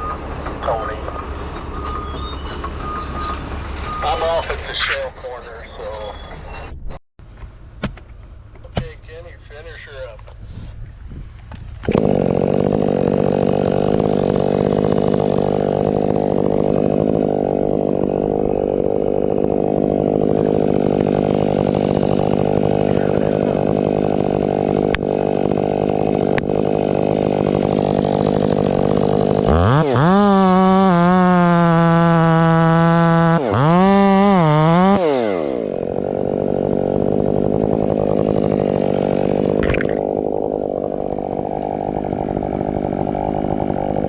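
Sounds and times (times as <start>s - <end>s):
chainsaw cutting wood: 11.4s - 44.0s.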